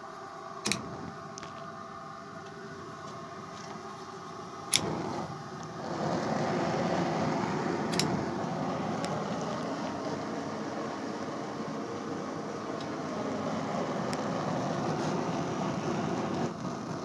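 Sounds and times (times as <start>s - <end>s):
burner ignition click: 0.6s - 1.7s, 4.6s - 16.8s
gas burner flame rushing: 0.6s - 17.0s.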